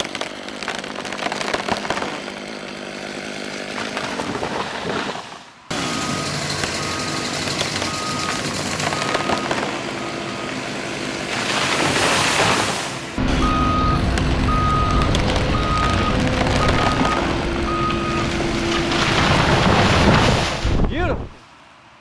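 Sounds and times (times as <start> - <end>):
backup alarm beeping: 5.9 - 10.6, 13.2 - 18.9
machine engine running: 13.0 - 20.0.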